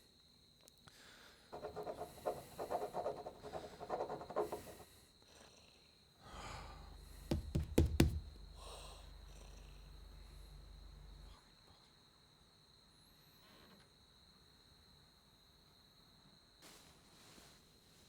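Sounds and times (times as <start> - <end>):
regular rasping: 1.6 - 4.8, 6.3 - 11.3
low hum: 6.3 - 11.4
sharp knocks: 6.8 - 9.6.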